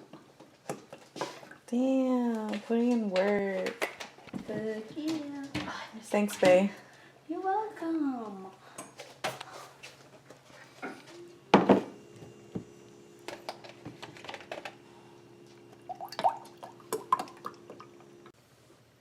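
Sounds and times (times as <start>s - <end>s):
steady low hum: 9.7s - 18.4s.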